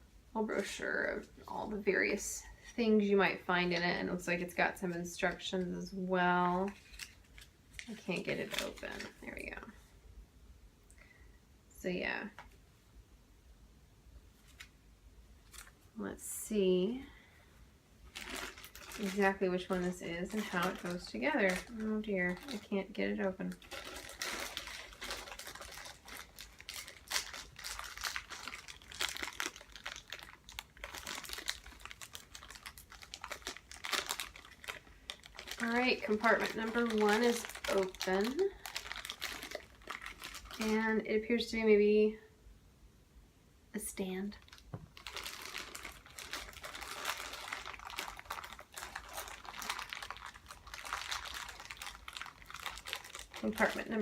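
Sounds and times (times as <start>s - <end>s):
plastic packaging crinkling: 5.1s - 9.7s, 15.4s - 15.8s, 18.0s - 41.1s, 44.4s - 54.0s.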